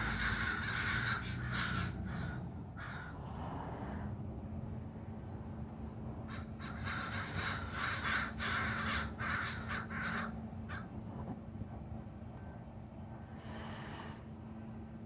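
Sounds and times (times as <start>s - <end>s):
birds giving harsh calls: 0.0s - 3.2s, 6.3s - 11.0s.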